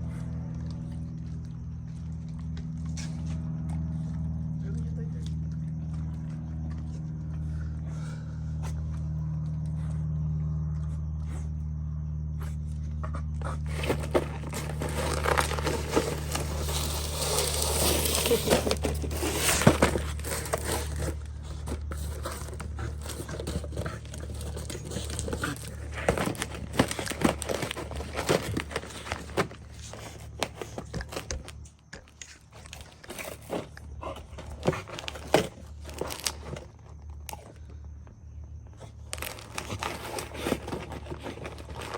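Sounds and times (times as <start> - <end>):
steady low hum: 0.0 - 41.9
packaging crinkling and tearing: 13.7 - 37.4, 39.0 - 41.9.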